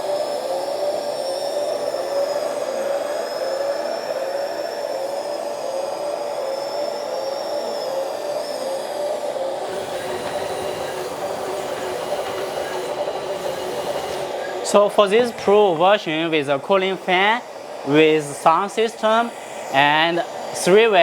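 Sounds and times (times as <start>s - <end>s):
excavator pump motor whining: 0.0s - 21.0s.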